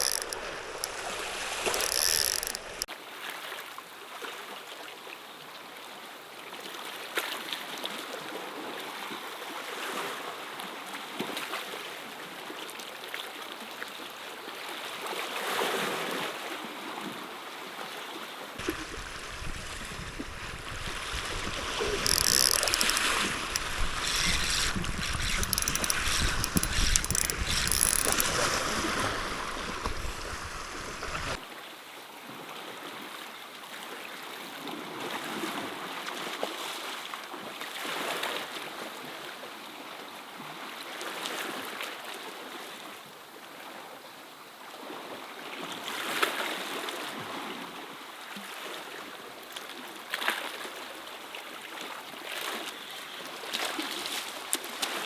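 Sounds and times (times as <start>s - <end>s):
wind on microphone: 18.6s - 31.4s.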